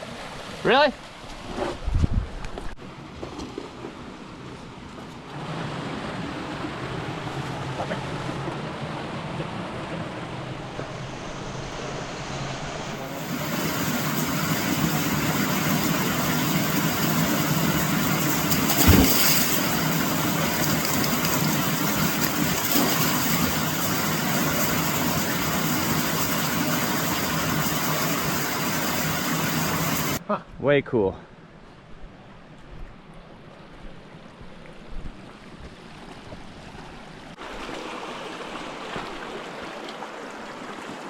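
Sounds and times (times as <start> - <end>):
creek water flowing: 4.0 - 30.2, 33.2 - 41.0.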